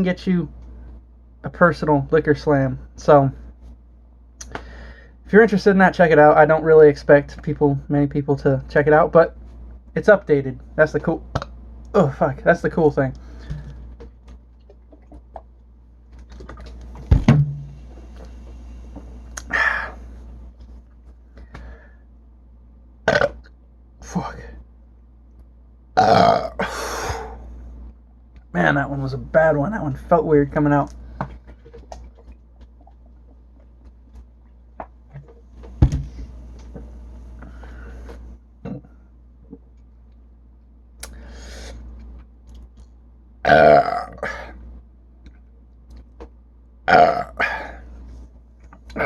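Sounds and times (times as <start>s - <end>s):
bottle thump: 17.1s - 17.8s.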